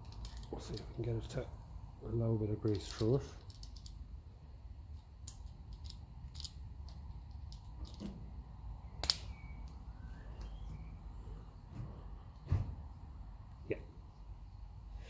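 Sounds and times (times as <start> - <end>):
metal parts and tools clicking: 0.0 - 1.1, 2.6 - 4.1, 4.9 - 8.2
low steady hum: 0.0 - 15.0.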